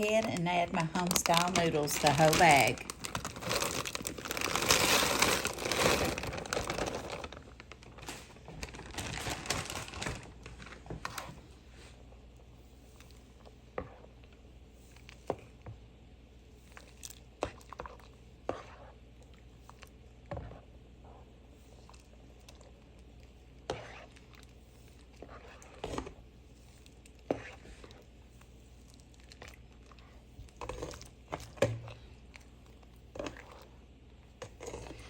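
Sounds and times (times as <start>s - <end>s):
plastic bag crinkling: 0.0s - 11.3s.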